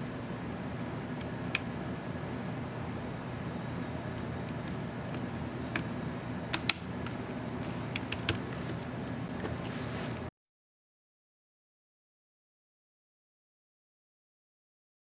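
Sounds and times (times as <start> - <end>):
steady low hum: 0.0 - 10.3
plastic keyboard key clicks: 6.6 - 8.4.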